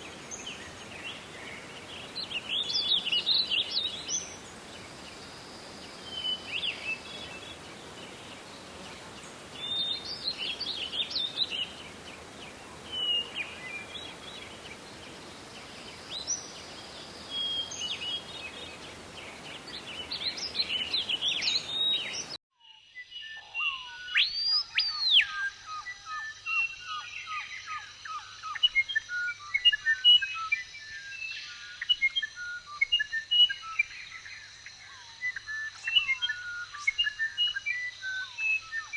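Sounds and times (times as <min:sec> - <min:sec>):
steady hiss: 0:00.0 - 0:22.4.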